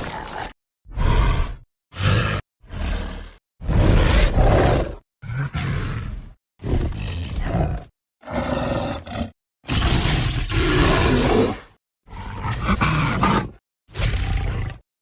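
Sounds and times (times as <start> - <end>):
dinosaur roars and growls: 0.0 - 14.8.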